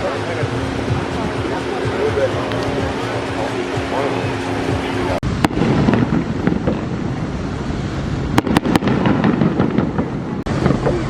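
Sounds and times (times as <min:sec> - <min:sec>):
fireworks crackling: 0:00.0 - 0:11.0
sharp firework bangs: 0:05.2 - 0:07.4, 0:08.3 - 0:11.0.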